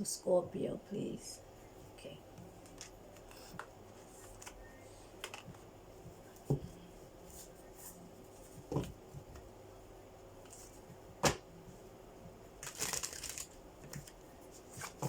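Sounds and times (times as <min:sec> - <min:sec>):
cards clicking and tapping: 0:05.2 - 0:05.6.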